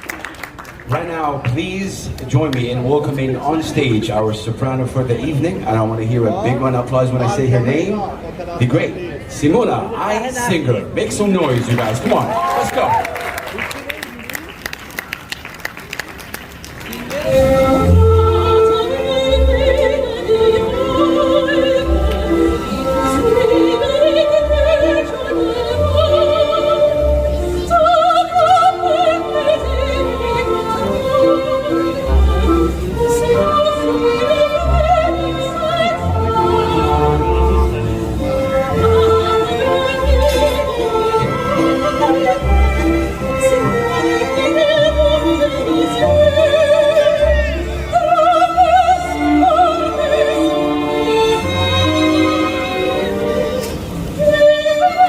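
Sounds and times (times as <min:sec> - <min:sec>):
orchestral accompaniment: 0:17.0 - 0:55.0
soprano singing operatic melody: 0:17.1 - 0:55.0.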